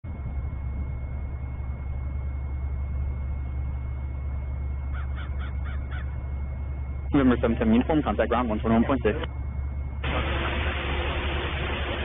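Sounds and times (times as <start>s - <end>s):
faint steady whine: 0.0s - 12.0s
jet engines rumbling: 0.1s - 12.0s.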